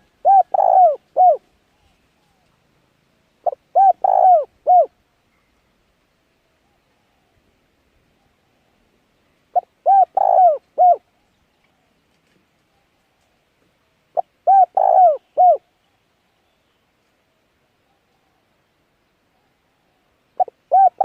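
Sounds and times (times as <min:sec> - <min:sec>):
bird cooing call: 0:00.0 - 0:02.6, 0:03.4 - 0:05.0, 0:06.5 - 0:08.9, 0:09.5 - 0:12.0, 0:14.1 - 0:16.6, 0:17.8 - 0:18.6, 0:19.3 - 0:21.0.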